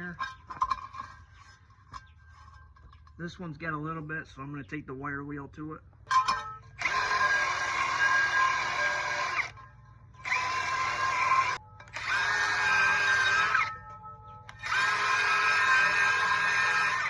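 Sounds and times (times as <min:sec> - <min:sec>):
wire wheel scraping metal: 0:00.0 - 0:03.6, 0:06.1 - 0:17.0
power tool whine: 0:06.8 - 0:13.8, 0:14.5 - 0:17.0.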